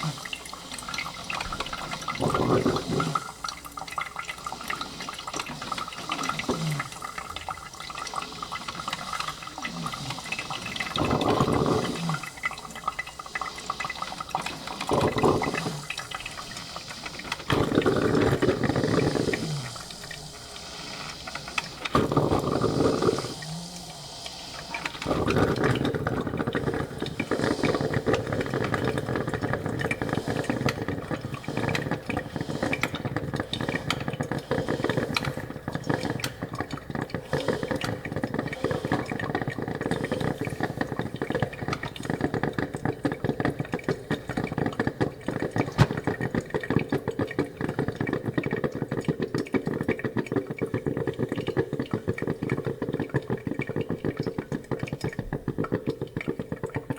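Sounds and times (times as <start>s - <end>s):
dense crackle of small clicks: 24.6s - 56.9s.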